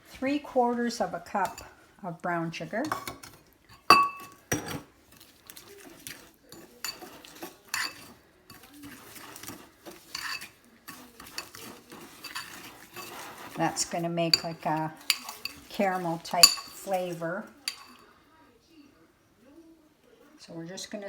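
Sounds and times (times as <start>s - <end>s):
metal utensil scraping a bowl: 1.2s - 1.8s, 2.7s - 18.1s.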